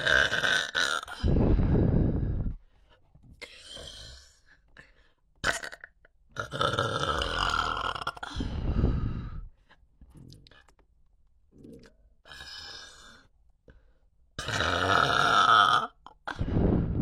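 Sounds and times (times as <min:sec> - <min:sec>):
person burping: 0:00.0 - 0:01.3, 0:05.4 - 0:08.4, 0:14.4 - 0:16.5.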